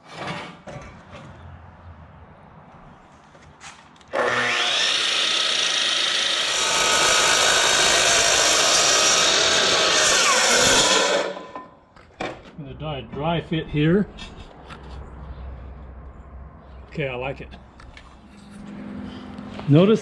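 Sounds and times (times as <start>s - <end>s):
miter saw cutting aluminum: 4.1s - 11.7s.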